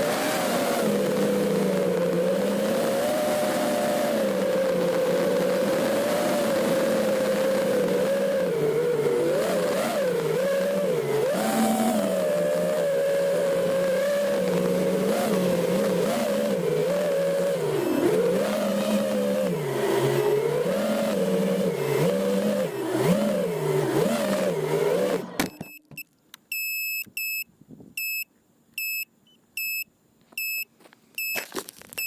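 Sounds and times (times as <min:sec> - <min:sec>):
drone motors whining: 0:00.0 - 0:26.0
short high electronic beeps: 0:25.5 - 0:31.4.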